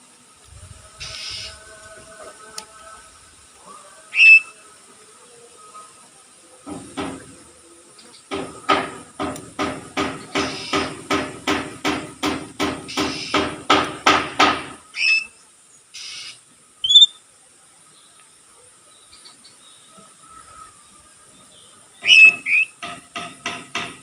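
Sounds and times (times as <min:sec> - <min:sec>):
bird whistling: 0:04.1 - 0:04.6, 0:15.0 - 0:15.3, 0:16.0 - 0:17.2, 0:22.0 - 0:22.8
sharp knocks: 0:06.6 - 0:07.4, 0:08.3 - 0:14.8, 0:22.3 - 0:24.0.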